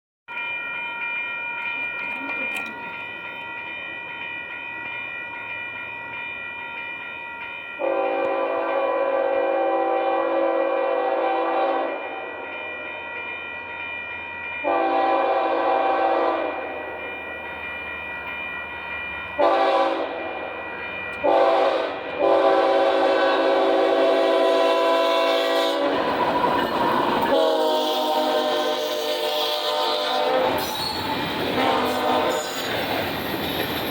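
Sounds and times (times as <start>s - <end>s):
locomotive air horn blasts: 7.8s - 12.0s, 14.6s - 16.6s, 19.4s - 20.2s, 21.2s - 26.1s, 27.2s - 30.7s, 31.5s - 32.7s.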